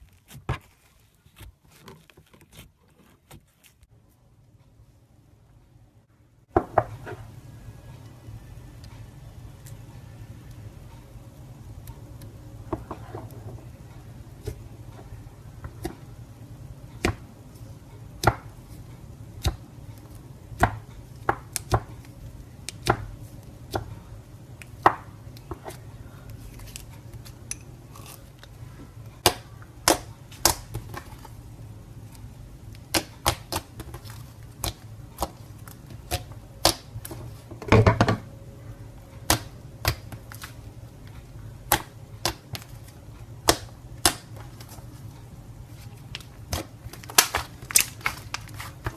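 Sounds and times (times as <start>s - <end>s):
slime crackling: 45.7s - 48.9s.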